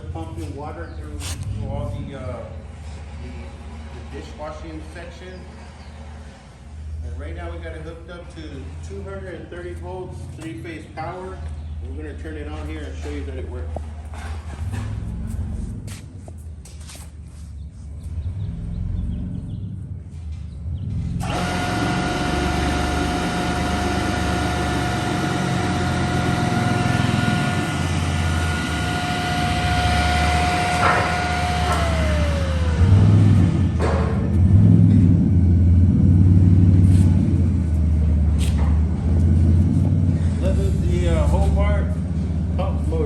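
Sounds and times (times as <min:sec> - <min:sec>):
low rumble: 0:13.6 - 0:21.2
pump motor whine: 0:21.0 - 0:43.0.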